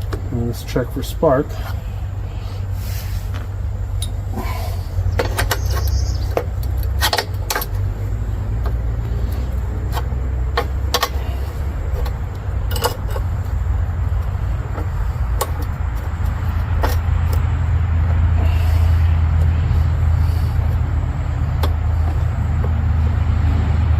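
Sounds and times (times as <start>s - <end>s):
steady low rumble: 0.0s - 23.9s.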